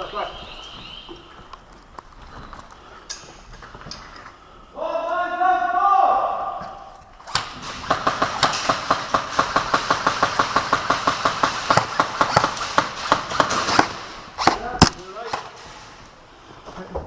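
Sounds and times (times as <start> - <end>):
airsoft gun shots: 7.3 - 15.0.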